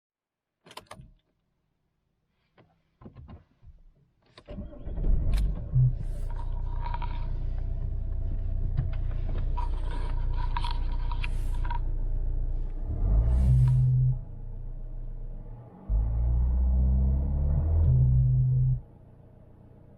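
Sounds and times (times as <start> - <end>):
diesel engine starting and idling: 4.5 - 19.9.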